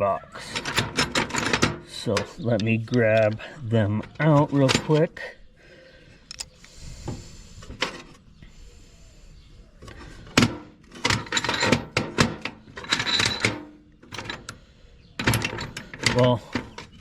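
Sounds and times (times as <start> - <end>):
hand tools clinking and clattering: 0.4 - 5.2, 9.8 - 14.6, 15.2 - 17.0.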